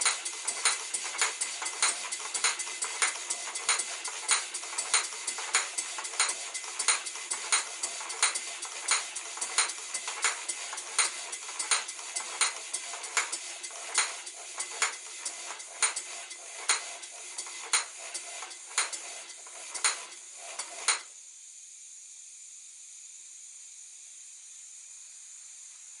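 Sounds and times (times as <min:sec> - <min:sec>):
model machines metallic clatter: 0:00.0 - 0:21.1
steady steam hiss: 0:00.0 - 0:26.0.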